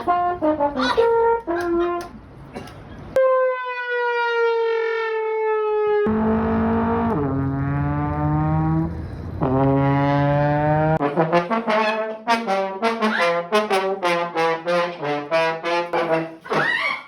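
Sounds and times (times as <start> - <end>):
brass horn notes: 0.0 - 2.1, 6.1 - 16.5.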